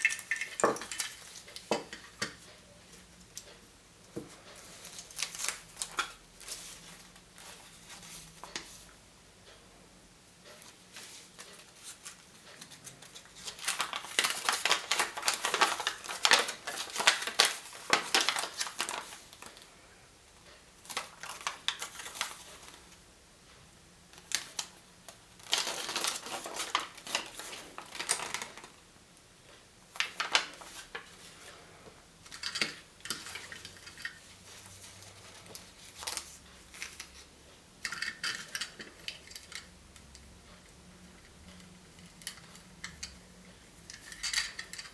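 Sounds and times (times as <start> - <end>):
wrappers crinkling: 11.0 - 19.6, 20.8 - 22.8, 24.2 - 28.8, 29.9 - 31.5.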